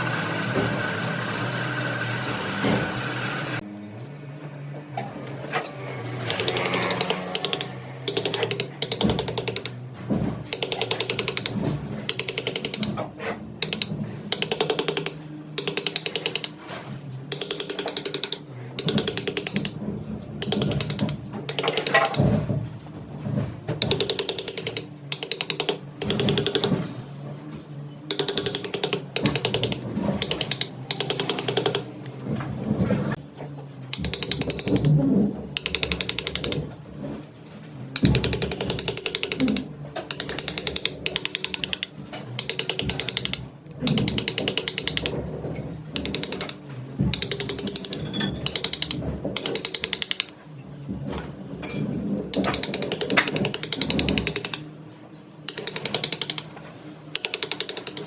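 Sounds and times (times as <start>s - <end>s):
lathe motor hum: 0.0s - 3.6s.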